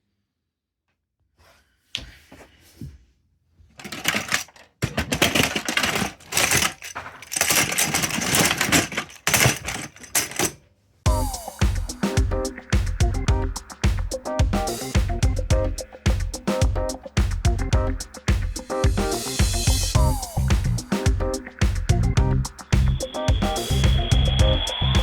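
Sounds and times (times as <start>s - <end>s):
small toys clattering: 3.7s - 10.7s
music: 11.1s - 25.0s.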